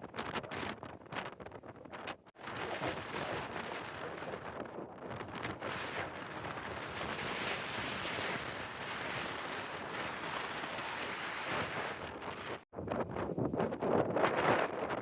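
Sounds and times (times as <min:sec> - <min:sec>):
strong wind across microphone: 0:00.0 - 0:15.0.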